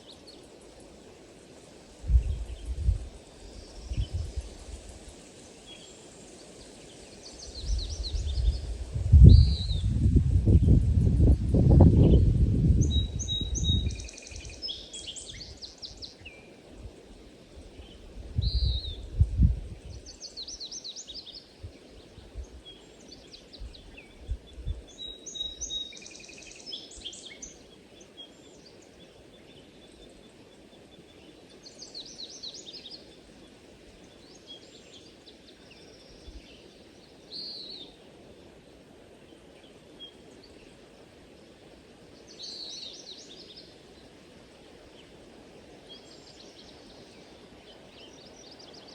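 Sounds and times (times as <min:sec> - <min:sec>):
low background noise: 0:00.0 - 0:48.9
songbirds singing trilled phrases: 0:06.6 - 0:16.3.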